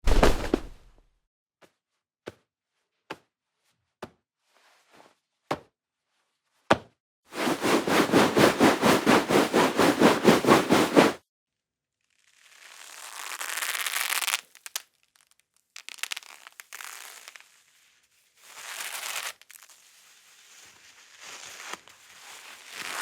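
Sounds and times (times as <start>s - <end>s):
fabric strokes: 0.0s - 0.8s, 7.4s - 11.2s.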